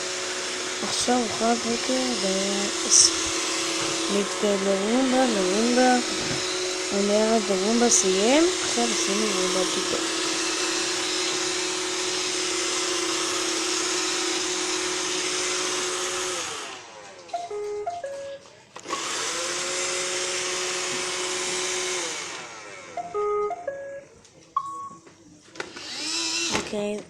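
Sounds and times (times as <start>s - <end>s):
robot vacuum whirring: 0.0s - 17.7s, 18.8s - 23.4s, 25.6s - 26.8s
short beeping tune: 17.4s - 18.4s, 23.0s - 25.0s.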